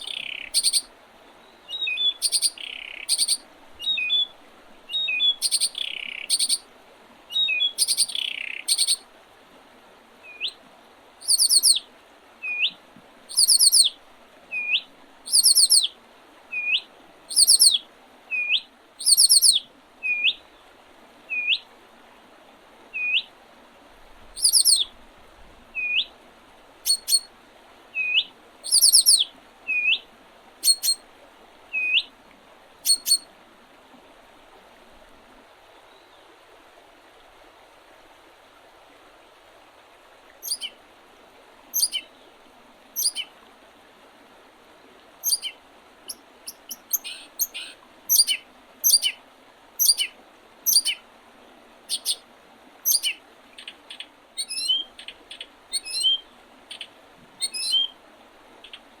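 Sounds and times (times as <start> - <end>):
small birds chirping: 0.0 - 4.3, 4.9 - 6.6, 7.3 - 9.0, 11.2 - 11.8, 13.3 - 13.9, 14.5 - 15.9, 16.6 - 17.8, 18.4 - 20.4, 24.4 - 24.9, 26.8 - 27.3, 28.0 - 30.0, 30.6 - 31.0, 32.8 - 33.2, 40.4 - 40.8, 41.7 - 42.1, 43.0 - 43.3, 45.2 - 49.2, 49.8 - 50.1, 50.7 - 51.0, 51.9 - 52.2, 52.8 - 57.9
faint steady hiss: 0.0 - 59.0.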